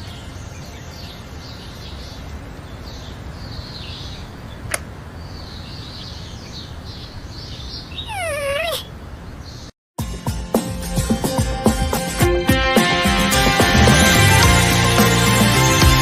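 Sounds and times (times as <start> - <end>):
faint bird chirps: 0.0 - 9.7
wavering animal cry: 7.9 - 9.0.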